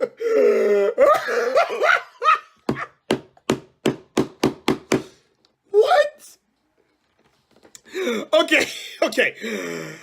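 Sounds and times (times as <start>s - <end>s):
man laughing: 0.0s - 3.0s.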